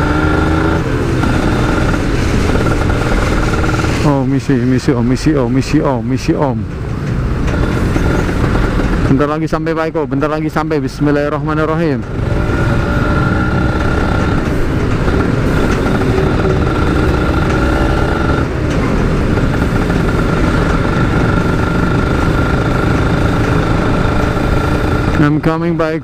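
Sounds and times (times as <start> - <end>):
motorcycle engine running: 0.0 - 26.0.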